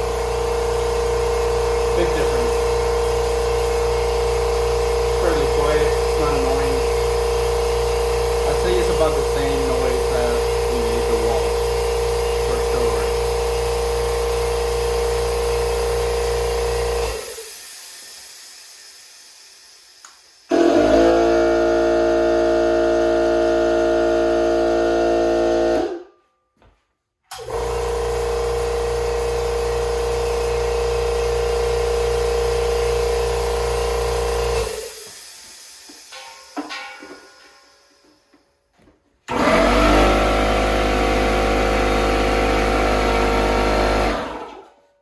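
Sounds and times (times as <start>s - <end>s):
higher pitched compressor hum: 0.0s - 17.4s, 20.5s - 26.0s, 39.3s - 44.6s
air compressor humming: 0.0s - 26.0s, 27.3s - 44.8s.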